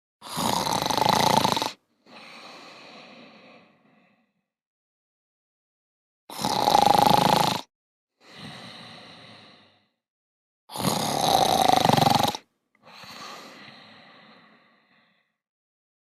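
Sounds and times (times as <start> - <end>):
exaggerated snoring: 0.2 - 4.3, 6.3 - 10.0, 10.7 - 15.3.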